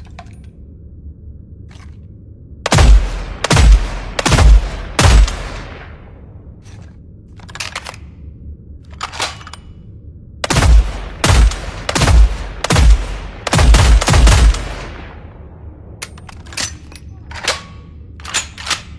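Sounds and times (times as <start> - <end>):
rapid gunshots: 2.7 - 5.9, 10.4 - 15.2.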